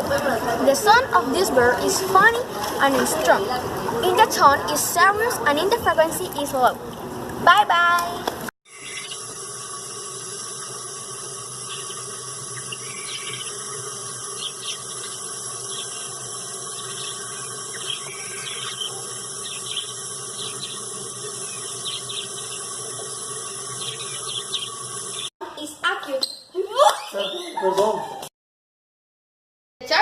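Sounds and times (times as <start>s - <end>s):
faint high bird chirps: 8.7s - 9.2s, 11.7s - 13.7s, 14.3s - 25.3s, 26.1s - 28.2s
steady hiss like running water: 8.7s - 25.3s.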